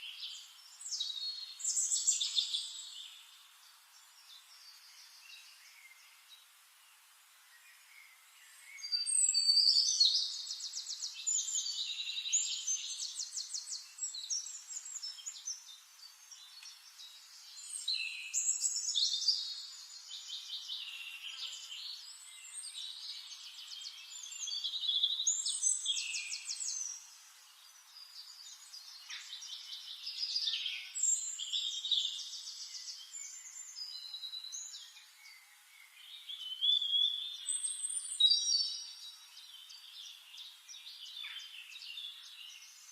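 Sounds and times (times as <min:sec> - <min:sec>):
songbird trilling and whistling: 0:08.8 - 0:15.4.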